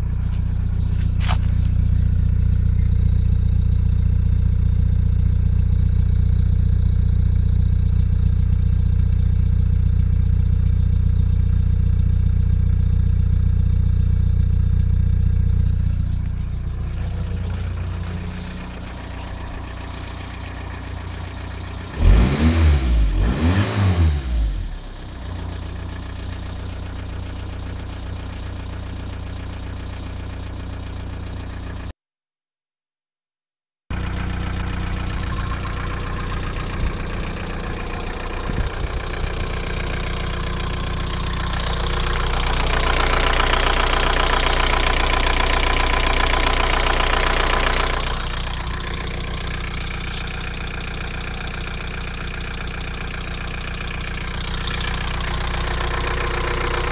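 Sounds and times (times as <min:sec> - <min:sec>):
diesel engine idling with ticking: 0:00.0 - 0:32.0, 0:33.9 - 0:56.9
engine revving: 0:15.4 - 0:27.8, 0:33.9 - 0:56.9.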